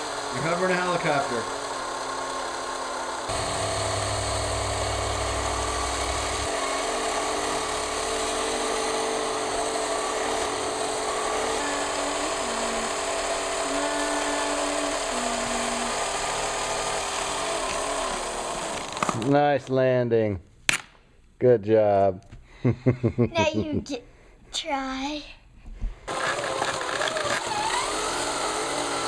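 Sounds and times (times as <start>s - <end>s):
toy helicopter whirring: 0.0s - 19.2s, 26.1s - 29.0s.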